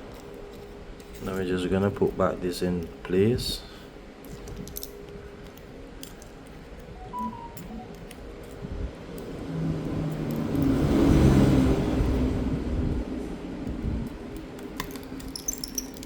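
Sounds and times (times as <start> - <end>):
small parts clicking and tapping: 0.0 - 3.4, 4.2 - 10.8, 13.6 - 16.0
handling noise: 13.6 - 16.0.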